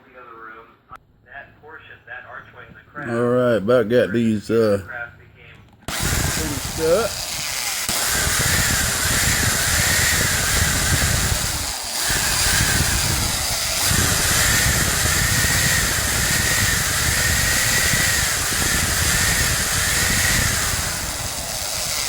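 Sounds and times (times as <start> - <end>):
electric drill whining: 5.8 - 22.0.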